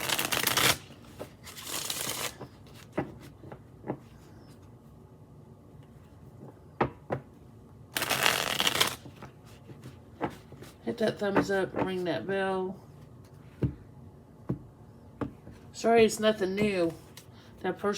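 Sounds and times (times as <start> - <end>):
cards being shuffled: 0.0 - 4.0, 8.0 - 10.8.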